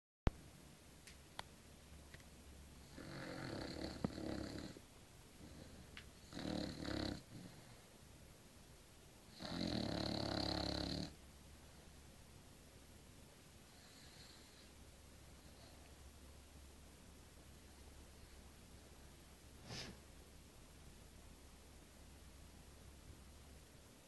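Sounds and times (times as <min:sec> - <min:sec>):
person snoring: 0:02.8 - 0:04.8, 0:05.4 - 0:07.5, 0:09.3 - 0:11.1.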